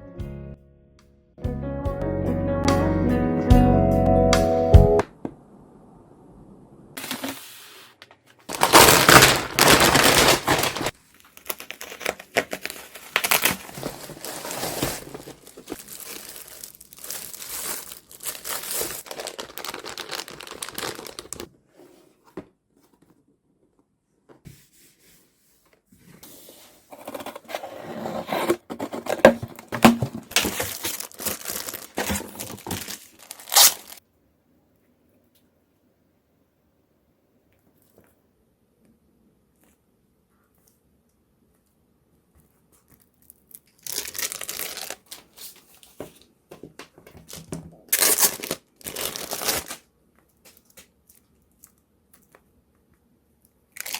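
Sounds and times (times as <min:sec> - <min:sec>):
paper and plastic wrapping rustling: 0:07.0 - 0:07.8, 0:08.4 - 0:21.5, 0:26.9 - 0:34.0, 0:43.8 - 0:51.2.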